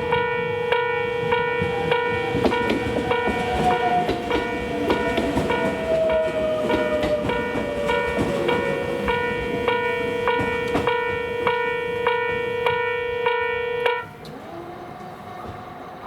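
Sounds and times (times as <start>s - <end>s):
level crossing alarm bell ringing: 0.0s - 14.2s
steady alarm tone: 0.0s - 14.2s.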